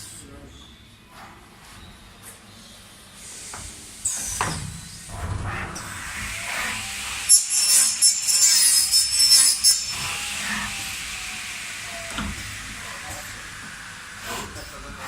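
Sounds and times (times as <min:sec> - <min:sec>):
machine hiss: 0:03.0 - 0:15.0
shrill cutting of plastic: 0:06.1 - 0:13.4.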